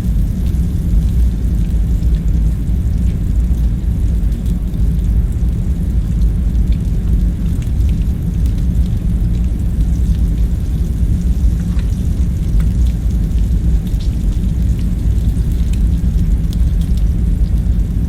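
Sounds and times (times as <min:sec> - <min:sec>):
low room ambience rumble: 0:00.0 - 0:18.0.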